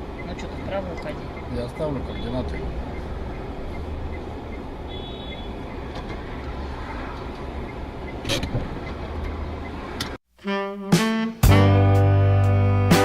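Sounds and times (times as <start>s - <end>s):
car driving rumble: 0.0s - 10.2s.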